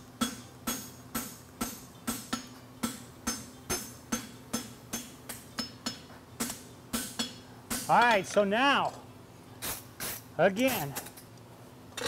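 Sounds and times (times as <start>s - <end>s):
hammer striking steel on anvil: 0.2s - 8.4s.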